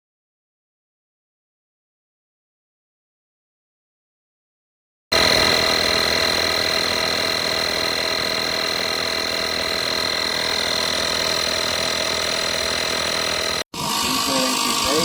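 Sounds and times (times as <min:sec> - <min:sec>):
tyre compressor buzzing: 0:05.1 - 0:15.0.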